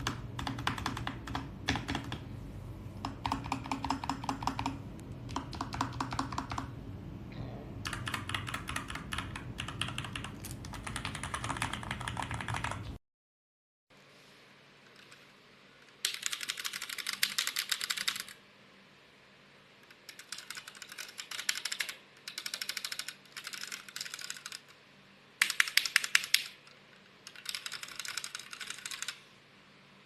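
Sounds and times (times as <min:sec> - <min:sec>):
mechanical keyboard typing: 0:00.0 - 0:02.3, 0:03.0 - 0:06.7, 0:07.8 - 0:12.9, 0:15.9 - 0:18.4, 0:19.8 - 0:24.8, 0:25.4 - 0:29.2.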